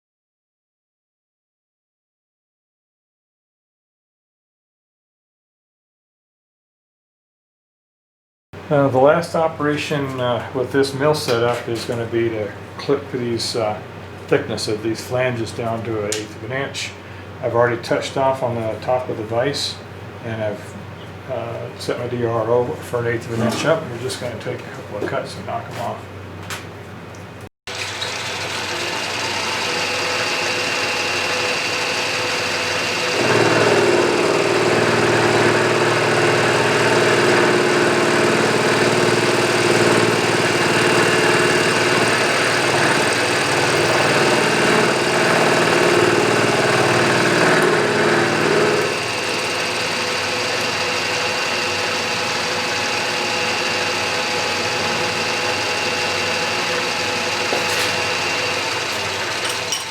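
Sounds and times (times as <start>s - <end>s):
milling machine running: 27.7s - 59.9s
cutter cutting metal: 27.8s - 59.9s.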